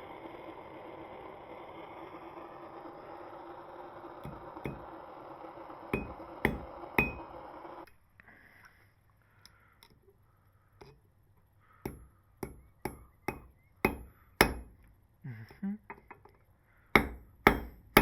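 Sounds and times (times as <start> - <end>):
steady running noise: 0.0 - 7.9
hammer striking metal: 4.2 - 4.8, 6.0 - 7.3, 11.9 - 14.8, 17.0 - 18.0.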